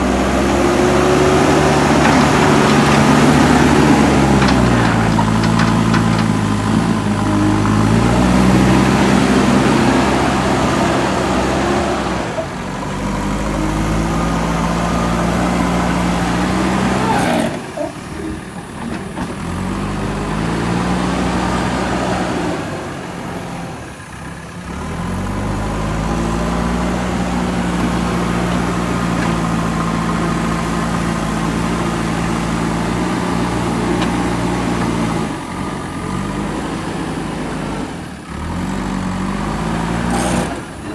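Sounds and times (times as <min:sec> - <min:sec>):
backhoe diesel engine working: 0:00.0 - 0:40.9.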